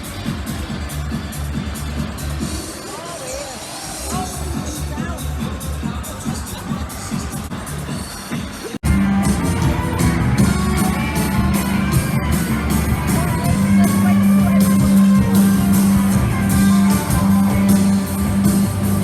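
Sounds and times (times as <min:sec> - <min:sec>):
guitar music with bass and beat: 0:08.8 - 0:19.0.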